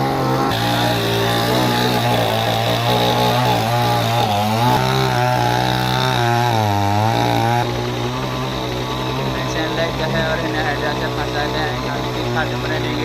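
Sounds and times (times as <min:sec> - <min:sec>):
chainsaw cutting into tree: 0:00.0 - 0:13.0.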